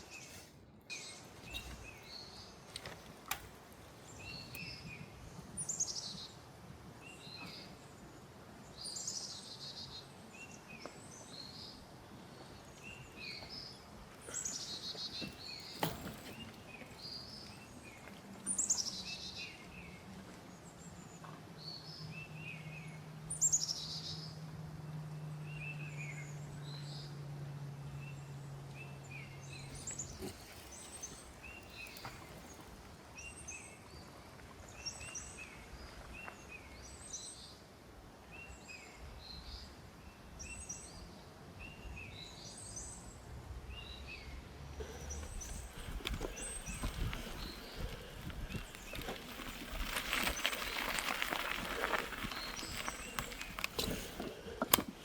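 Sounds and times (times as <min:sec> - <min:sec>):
birds chirping: 0:00.0 - 0:06.4, 0:08.9 - 0:20.0, 0:28.0 - 0:34.0, 0:43.7 - 0:55.0.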